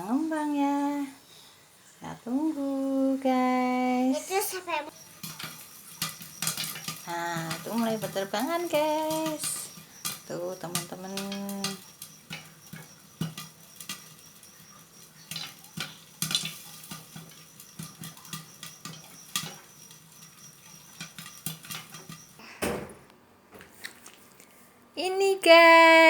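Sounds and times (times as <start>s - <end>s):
popcorn popping in covered pan: 2.2s - 23.0s
loud knock: 22.6s - 23.0s.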